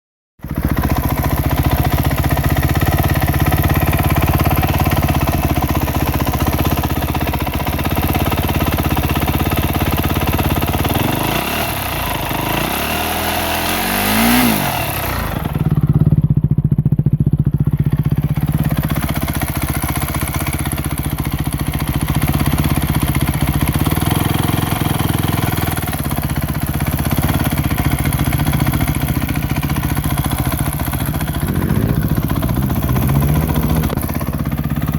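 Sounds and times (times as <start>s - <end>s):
engine ticking: 0.4s - 12.7s, 14.0s - 34.9s
motorcycle engine idling and revving: 0.4s - 34.9s.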